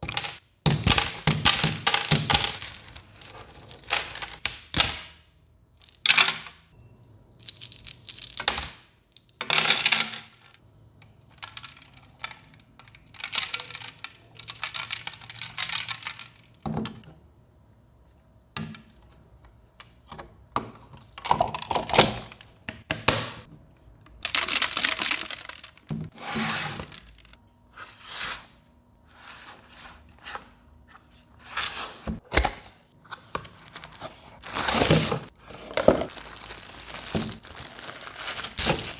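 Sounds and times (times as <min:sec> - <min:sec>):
box and plastic parts knocking: 0:00.0 - 0:02.9, 0:34.4 - 0:38.9
packaging rustling and crinkling: 0:01.8 - 0:04.5, 0:33.2 - 0:38.9.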